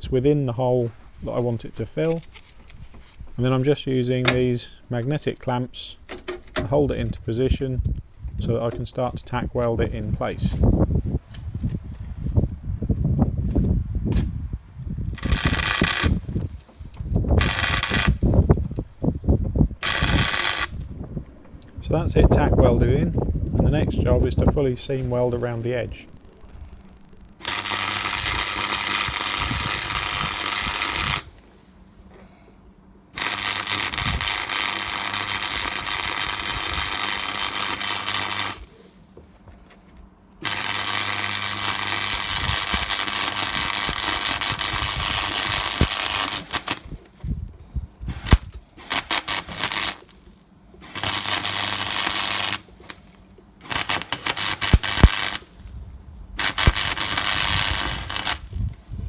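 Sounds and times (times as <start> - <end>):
arc welder hissing crackle: 15.1 - 22.0, 24.2 - 32.1, 33.1 - 39.2, 40.4 - 59.0.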